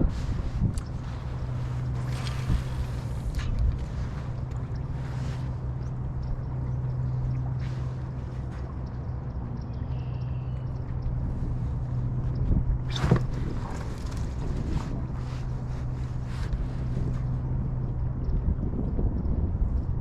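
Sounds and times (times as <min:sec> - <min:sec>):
wind rumbling on microphone: 0:00.0 - 0:20.0.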